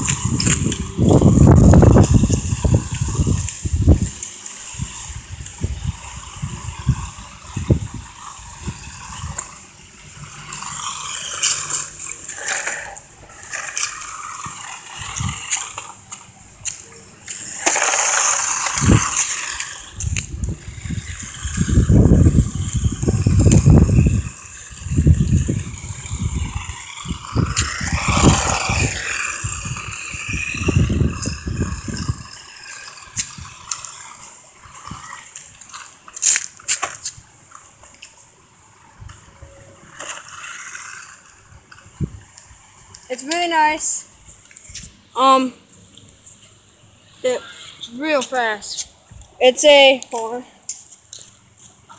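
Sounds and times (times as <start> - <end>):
wind buffeting microphone: 0.0 - 35.6, 41.4 - 44.9
toy car driving over rough ground: 0.0 - 51.9.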